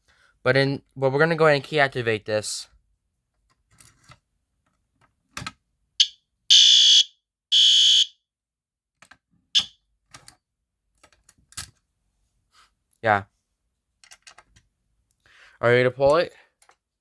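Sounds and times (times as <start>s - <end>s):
high-pitched alarm chirp: 6.0s - 8.1s
fire alarm horn blasts: 6.0s - 8.2s.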